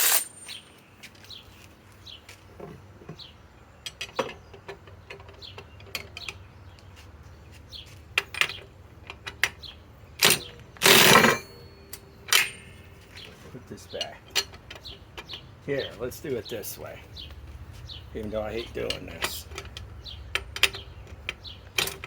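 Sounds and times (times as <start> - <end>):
metal clank: 10.2 - 12.9.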